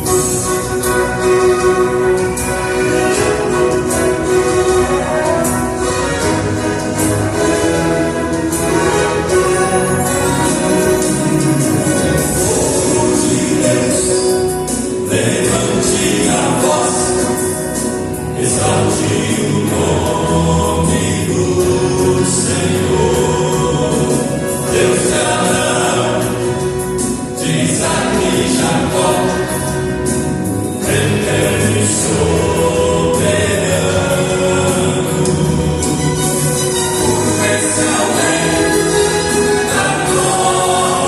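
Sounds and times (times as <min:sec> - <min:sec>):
music backing with light beat: 0:00.0 - 0:41.0
vocal quartet singing a hymn: 0:00.0 - 0:41.0.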